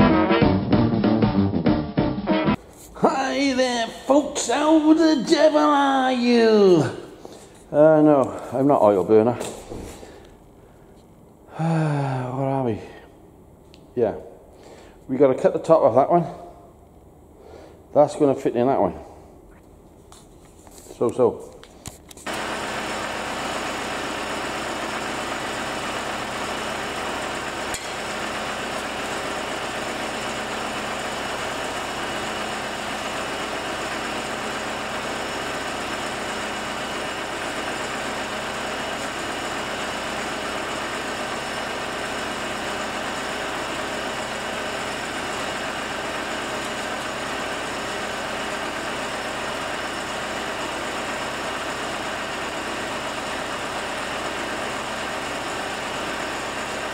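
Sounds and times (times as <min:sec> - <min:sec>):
motor humming: 0:22.3 - 0:56.9.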